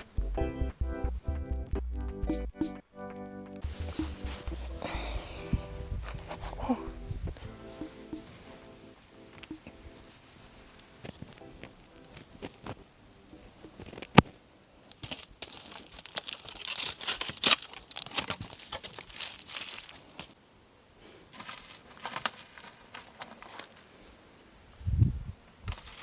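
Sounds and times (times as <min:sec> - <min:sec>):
crinkling handling noises: 0:03.6 - 0:12.9, 0:14.9 - 0:20.4, 0:21.3 - 0:24.1, 0:25.7 - 0:26.0
small bird chirping: 0:09.5 - 0:11.1, 0:18.0 - 0:19.8, 0:20.4 - 0:21.1, 0:21.7 - 0:25.7.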